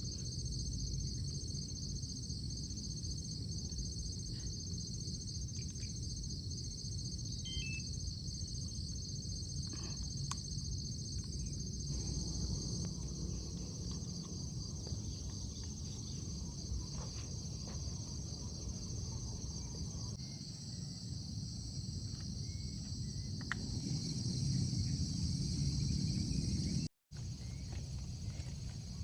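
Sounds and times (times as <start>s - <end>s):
low rumbling background noise: 0.0s - 20.2s
insects trilling: 0.1s - 29.0s.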